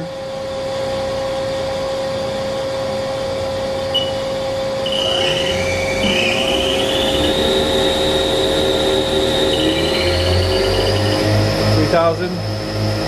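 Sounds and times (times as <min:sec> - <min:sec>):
high whine rising in pitch: 0:03.7 - 0:13.0
lathe spindle humming: 0:04.0 - 0:13.0.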